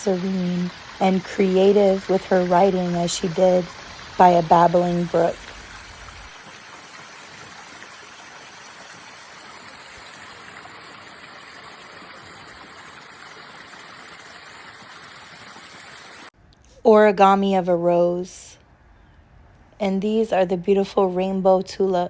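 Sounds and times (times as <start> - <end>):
brook babbling: 0.0 - 16.3.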